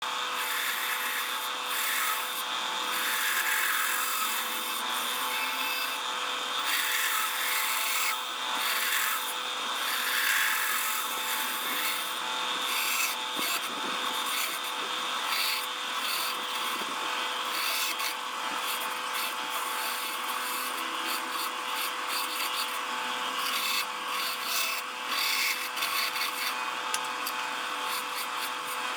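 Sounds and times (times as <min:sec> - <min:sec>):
electric saw cutting wood: 0:00.0 - 0:28.9.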